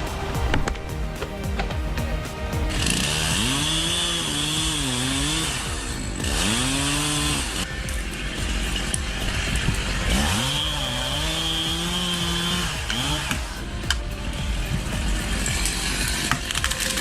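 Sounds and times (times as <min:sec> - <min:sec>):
chainsaw cutting wood: 0:02.7 - 0:17.0.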